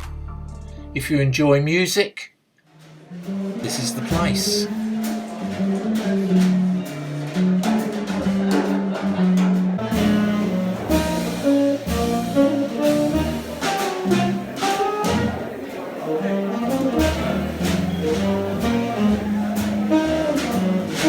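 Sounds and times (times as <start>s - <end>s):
bass part: 0.0s - 1.1s, 3.3s - 21.0s
instrumental music with percussion: 2.8s - 15.6s, 16.3s - 21.0s.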